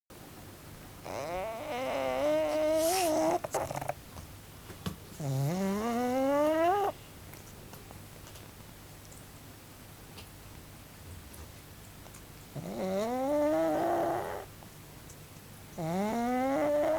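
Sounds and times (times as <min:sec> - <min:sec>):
dog snoring loudly: 0:01.0 - 0:04.0, 0:05.2 - 0:07.0, 0:12.5 - 0:14.5, 0:15.8 - 0:16.9.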